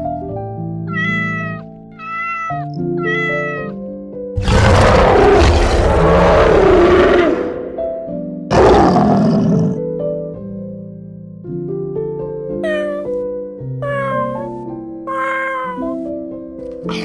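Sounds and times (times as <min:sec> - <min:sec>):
soft background music: 0:00.0 - 0:17.0
kitten meowing: 0:00.9 - 0:03.8, 0:12.6 - 0:13.1, 0:13.8 - 0:16.0
loud rough roar: 0:04.4 - 0:07.8.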